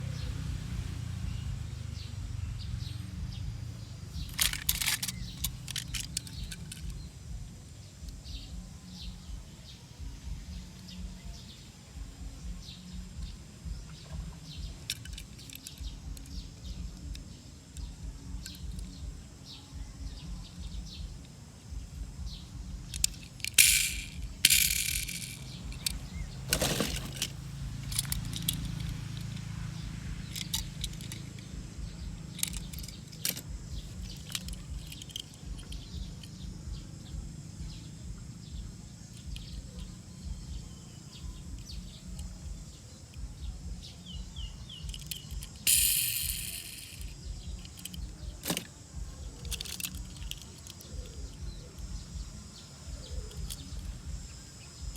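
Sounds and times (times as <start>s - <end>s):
steady low rumble: 0.0s - 54.9s
small hard objects clinking: 4.2s - 7.0s, 14.8s - 15.8s, 22.8s - 29.5s, 30.2s - 31.5s, 32.2s - 36.4s, 44.7s - 48.7s, 49.5s - 51.2s.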